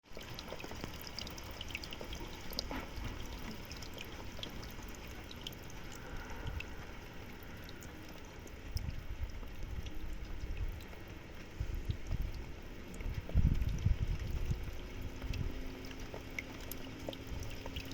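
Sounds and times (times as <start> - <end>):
rain pattering on water: 0.0 - 17.9
drip plinks: 11.8 - 17.9.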